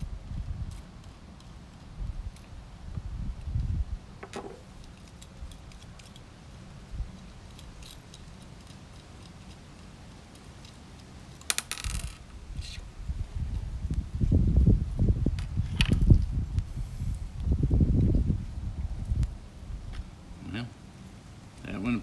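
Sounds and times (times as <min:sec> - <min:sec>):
wind rumble on microphone: 0:00.0 - 0:01.0, 0:01.8 - 0:05.8, 0:06.8 - 0:07.5, 0:12.3 - 0:20.4
small metallic clicks and clinks: 0:04.2 - 0:06.3, 0:07.1 - 0:12.3.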